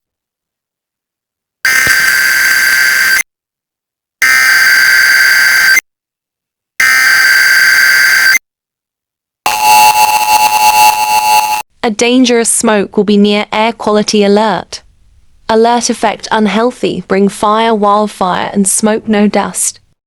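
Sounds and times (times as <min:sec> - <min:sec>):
digital data tone bursts: 0:01.7 - 0:03.2, 0:09.5 - 0:11.6
two-tone attention signal: 0:09.5 - 0:11.6.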